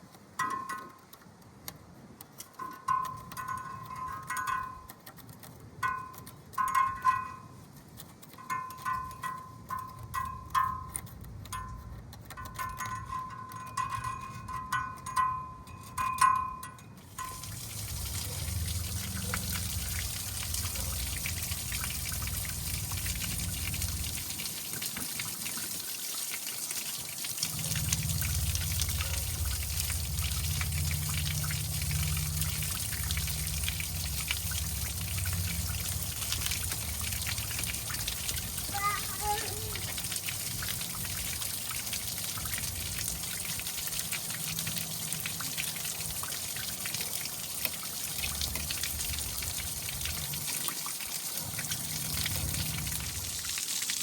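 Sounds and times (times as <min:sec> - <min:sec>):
water spraying: 0:17.0 - 0:54.0.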